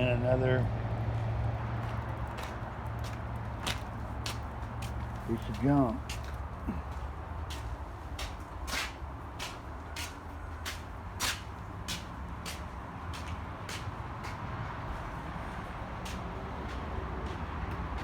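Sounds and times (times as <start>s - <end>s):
vehicle engine rumbling: 0.0s - 8.5s.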